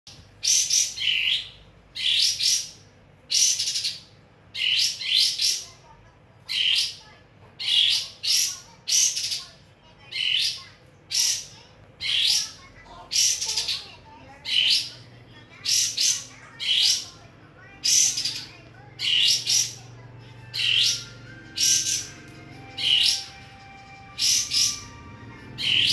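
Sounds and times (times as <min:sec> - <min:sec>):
bird chattering calls: 0:10.1 - 0:25.0, 0:25.6 - 0:25.9.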